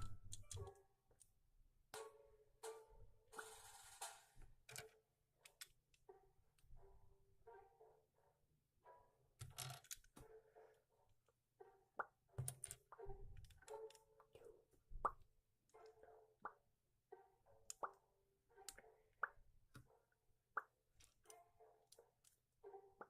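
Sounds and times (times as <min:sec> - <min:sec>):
plastic bricks clicking: 0:00.0 - 0:00.8, 0:09.4 - 0:10.2, 0:12.4 - 0:14.0.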